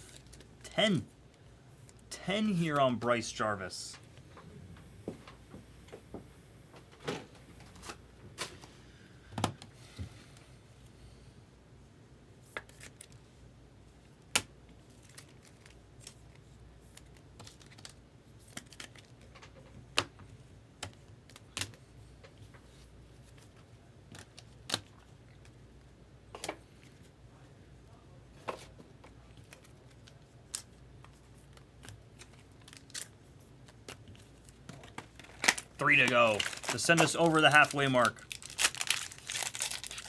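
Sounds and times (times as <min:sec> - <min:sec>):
trading cards flipping: 0:34.9 - 0:40.0.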